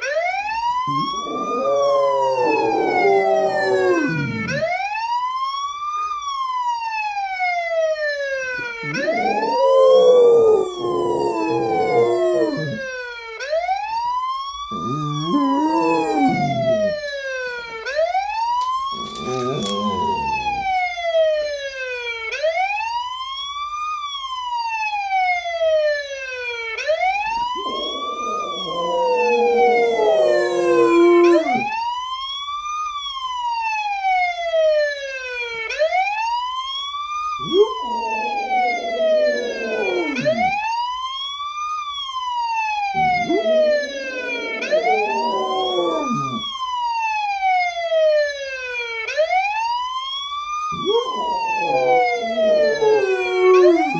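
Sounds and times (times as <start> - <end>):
wailing emergency siren: 0.0 - 5.4, 6.3 - 17.2, 17.9 - 20.9, 26.9 - 31.9, 37.4 - 41.2, 42.0 - 53.9
dog howling: 0.8 - 4.8, 8.6 - 13.0, 14.7 - 17.1, 18.7 - 20.9, 27.2 - 31.8, 37.4 - 40.8, 42.8 - 46.5, 50.7 - 53.9.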